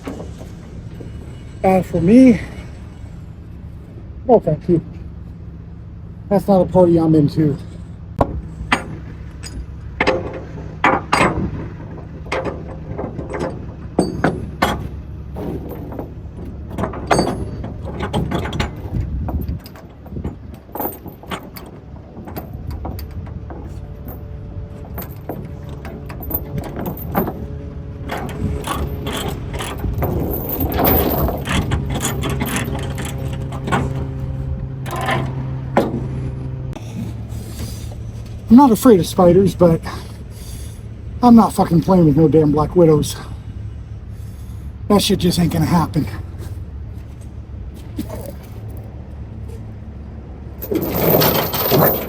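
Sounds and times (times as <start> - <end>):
steady low hum: 21.8 - 52.0
chains clinking: 28.1 - 33.8, 50.6 - 52.0.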